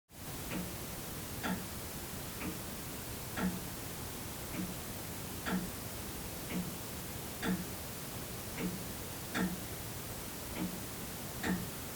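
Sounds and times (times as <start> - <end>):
room tone hiss: 0.1 - 11.9
mechanical clock ticking: 0.4 - 0.8, 1.4 - 1.8, 2.4 - 2.7, 3.4 - 3.7, 4.5 - 4.8, 5.4 - 5.8, 6.5 - 6.8, 7.4 - 7.8, 8.5 - 9.7, 10.5 - 10.8, 11.4 - 11.8.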